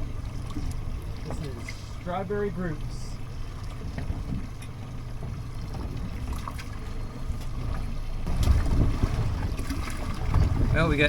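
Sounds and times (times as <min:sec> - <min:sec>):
wind and water against hull: 0:00.0 - 0:11.0.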